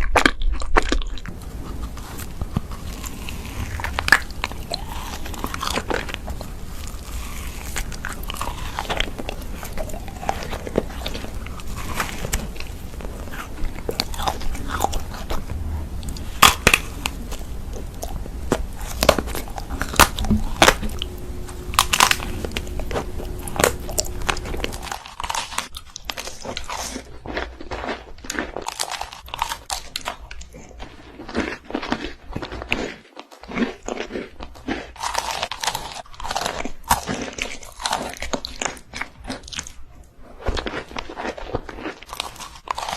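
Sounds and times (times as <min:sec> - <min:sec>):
person chewing crunchy food: 0:00.0 - 0:42.9
low background rumble: 0:01.2 - 0:25.8.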